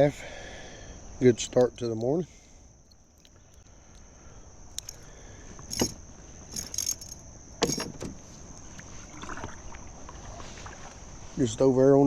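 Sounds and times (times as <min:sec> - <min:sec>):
insects buzzing: 0:00.0 - 0:12.0
gear knocking and rattling: 0:05.7 - 0:08.1.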